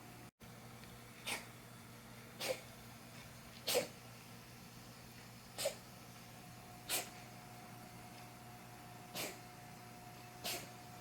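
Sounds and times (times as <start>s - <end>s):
cat coughing: 1.2s - 1.5s, 2.4s - 2.7s, 3.6s - 4.0s, 5.6s - 5.8s, 6.8s - 7.2s, 9.1s - 9.5s, 10.4s - 10.8s.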